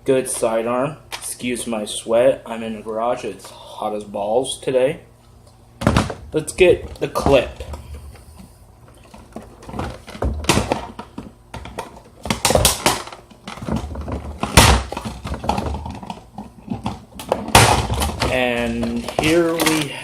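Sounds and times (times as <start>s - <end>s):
plastic clattering and rustling: 5.8s - 20.0s.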